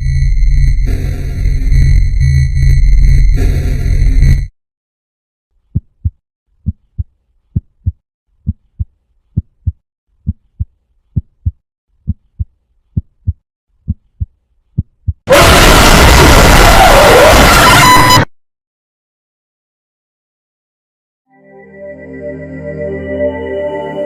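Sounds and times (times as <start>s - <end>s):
harsh noise blast: 0.0s - 4.5s, 15.3s - 18.3s
heartbeat thumps: 5.7s - 15.2s.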